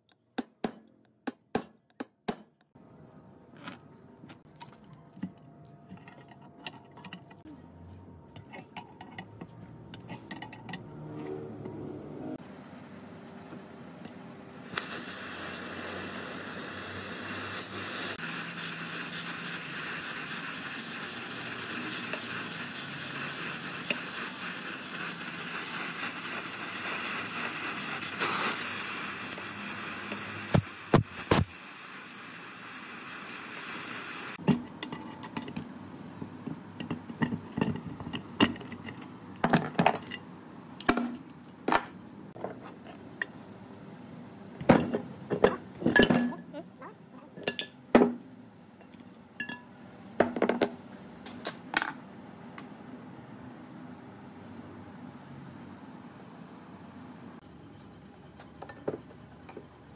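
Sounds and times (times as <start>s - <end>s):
steady hiss: 14.6s - 34.4s.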